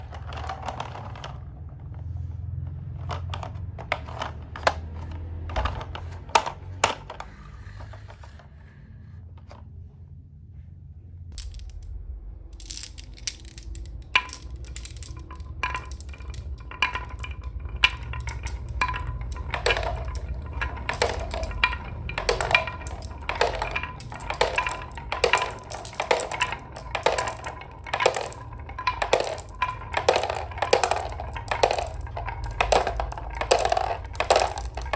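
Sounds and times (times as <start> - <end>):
marbles clicking down wooden run: 0.0 - 2.2, 2.9 - 8.8, 11.4 - 34.9.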